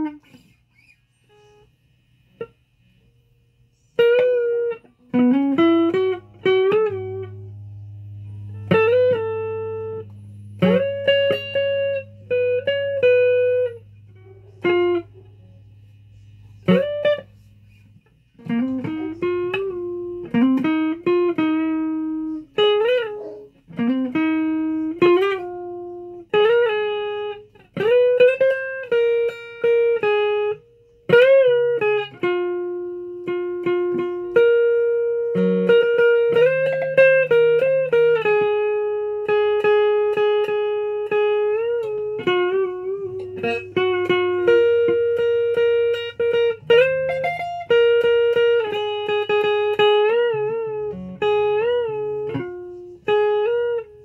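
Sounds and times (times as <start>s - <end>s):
guitar plucked notes sliding: 0.0s - 54.0s
low held guitar note: 2.4s - 28.3s.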